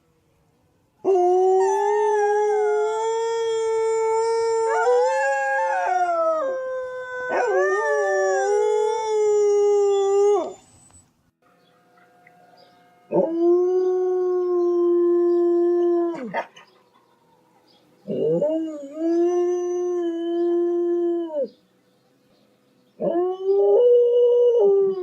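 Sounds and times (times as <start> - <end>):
dogs howling: 1.1 - 10.6.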